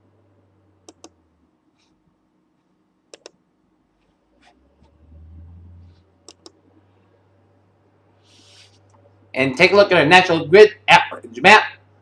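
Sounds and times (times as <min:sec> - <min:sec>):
computer mouse clicking: 0:00.8 - 0:01.2, 0:03.1 - 0:03.4, 0:06.2 - 0:06.6
low hum: 0:03.1 - 0:09.7.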